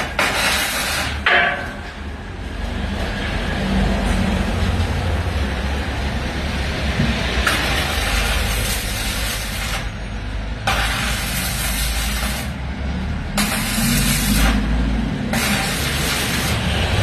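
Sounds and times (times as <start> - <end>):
arc welding crackling: 0.0 - 1.3, 7.3 - 10.0, 10.6 - 17.0.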